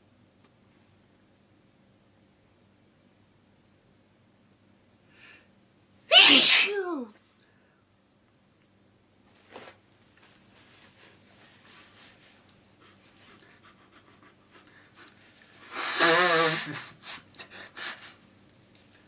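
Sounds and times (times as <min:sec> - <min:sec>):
person breathing and sniffling: 0:12.7 - 0:18.2.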